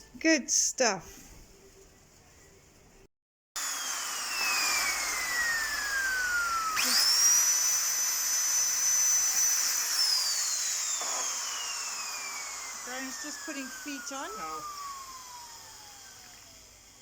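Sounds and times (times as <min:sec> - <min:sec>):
power drill motor whine: 0:03.6 - 0:17.0.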